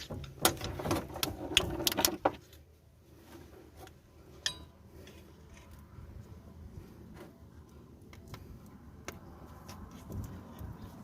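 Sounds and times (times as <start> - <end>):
metallic clicks of steel parts: 4.3 - 5.8
ringing metal clink: 4.4 - 4.8.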